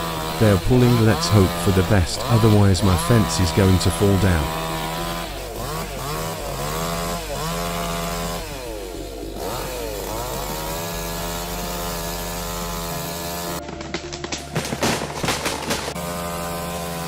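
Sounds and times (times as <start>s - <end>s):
chainsaw engine revving: 0.0s - 17.0s
sharp cracks: 13.3s - 16.3s.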